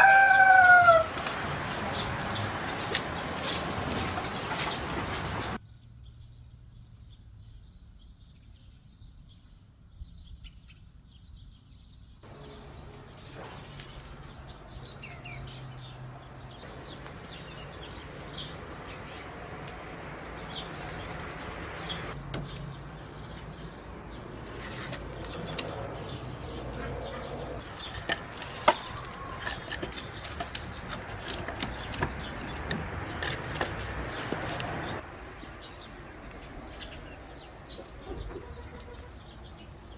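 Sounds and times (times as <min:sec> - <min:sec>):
small birds chirping: 0:00.0 - 0:39.9
sharp clicks and knocks: 0:22.1 - 0:23.6, 0:27.6 - 0:35.0.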